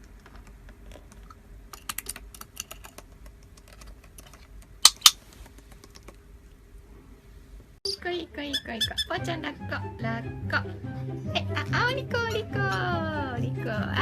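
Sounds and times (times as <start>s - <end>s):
sharp loud clicks: 4.7s - 6.2s.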